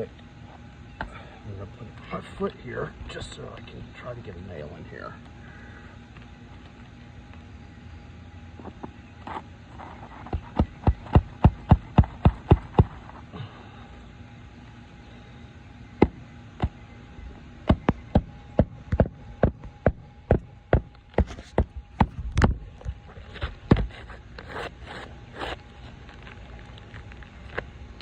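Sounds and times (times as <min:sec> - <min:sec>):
shingle scraping: 0:08.6 - 0:13.3, 0:20.3 - 0:27.6.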